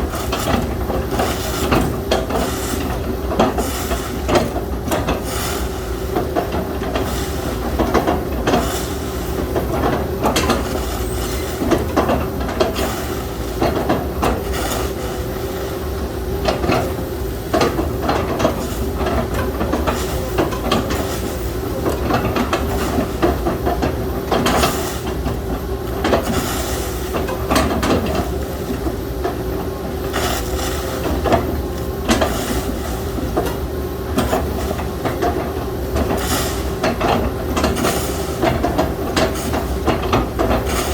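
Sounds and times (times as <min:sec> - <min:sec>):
excavator engine humming: 0:00.0 - 0:40.9.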